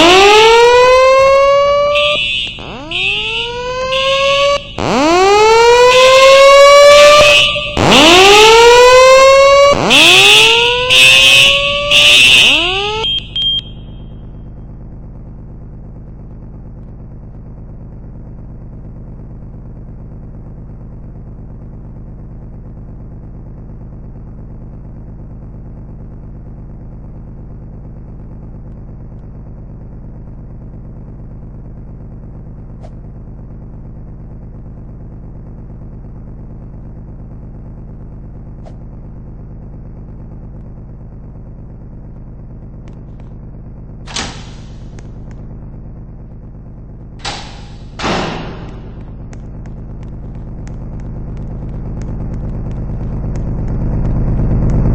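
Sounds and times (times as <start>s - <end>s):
fire alarm whooping: 0.0s - 14.2s
steady low hum: 0.0s - 54.9s.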